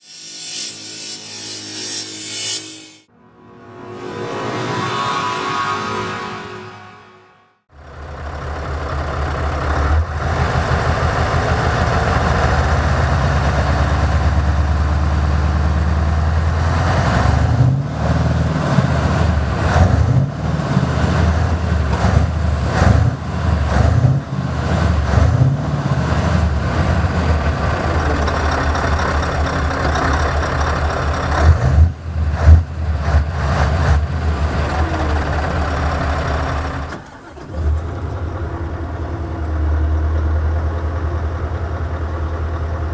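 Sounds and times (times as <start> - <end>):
diesel truck engine idling and revving: 9.0 - 42.9.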